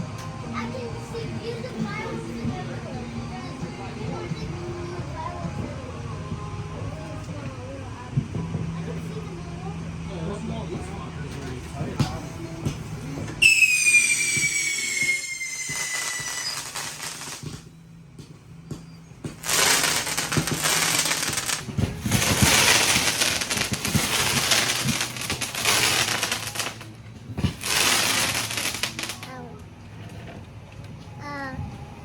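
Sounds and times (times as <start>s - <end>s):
firework crackling: 12.0s - 17.7s, 19.3s - 29.4s
firework falling whistle: 13.4s - 17.7s, 19.4s - 26.8s, 27.4s - 29.3s.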